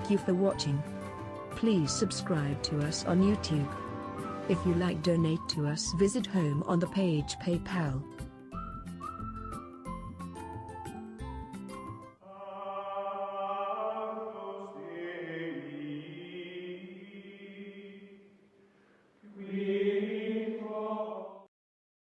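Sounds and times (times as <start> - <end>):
held chant-like vocal tones: 0.0 - 5.4, 12.2 - 18.3, 19.2 - 21.5
held chord: 0.0 - 5.6.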